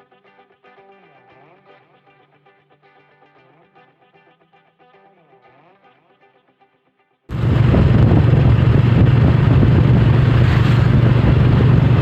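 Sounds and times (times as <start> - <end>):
road noise: 7.3 - 12.0
vehicle engine droning: 7.3 - 12.0.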